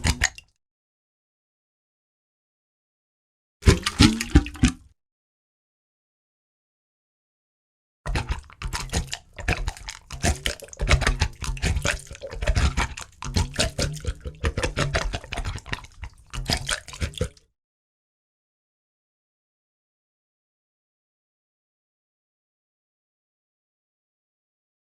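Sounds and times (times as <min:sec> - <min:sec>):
water splashing and dripping: 0:00.0 - 0:00.5, 0:03.6 - 0:04.8, 0:08.1 - 0:17.4.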